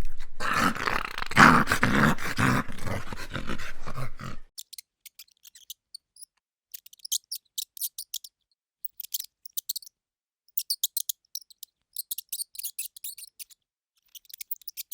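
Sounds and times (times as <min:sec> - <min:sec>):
mouse squeaking: 0:04.6 - 0:14.9.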